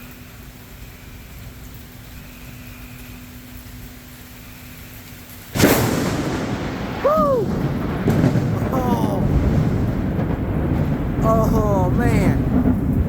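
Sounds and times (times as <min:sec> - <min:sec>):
rain hiss: 0:00.0 - 0:13.0
thunderclap and rumbling thunder: 0:05.5 - 0:13.0.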